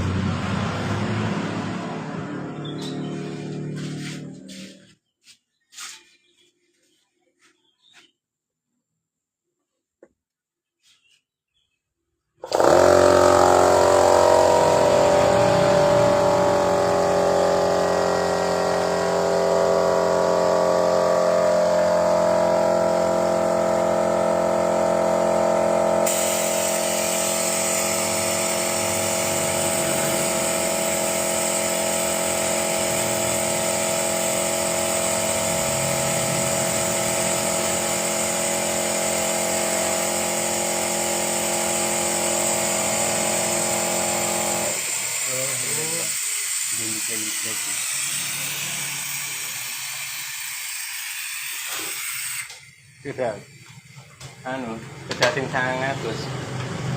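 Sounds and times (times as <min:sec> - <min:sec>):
motor running steadily: 0:12.4 - 0:56.9.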